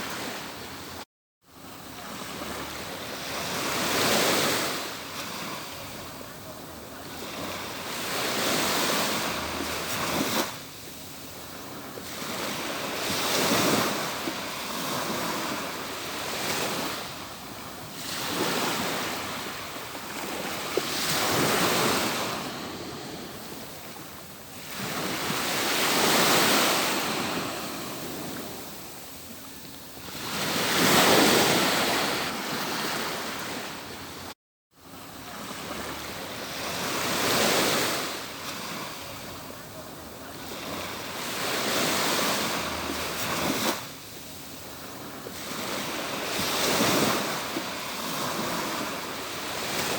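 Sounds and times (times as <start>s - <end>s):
waves breaking on a beach: 0.0s - 49.9s.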